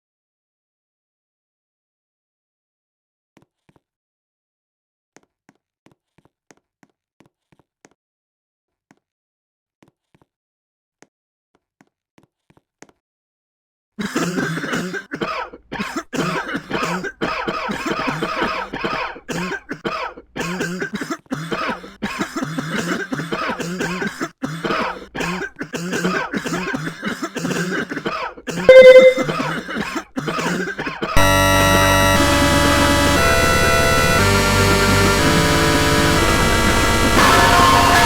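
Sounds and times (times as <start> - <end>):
person coughing in rapid fits: 14.0 - 31.2
short loud tone: 28.7 - 29.4
loud electronic music: 37.1 - 38.0.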